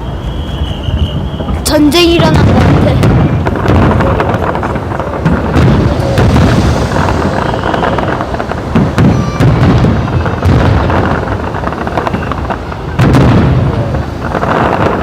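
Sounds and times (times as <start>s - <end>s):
fireworks booming and cracking: 0.0s - 15.0s.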